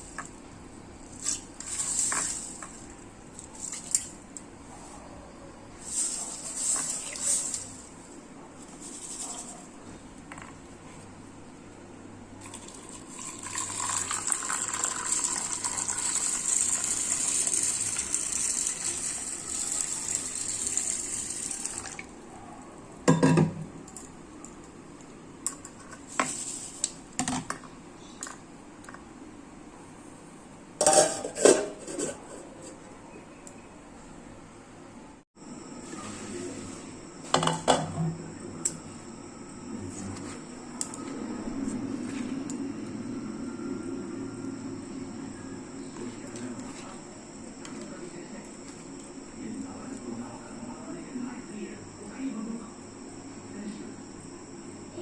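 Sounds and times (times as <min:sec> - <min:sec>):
water pouring into metal pot: 0:12.4 - 0:22.0
metal pots clanking: 0:30.8 - 0:32.5.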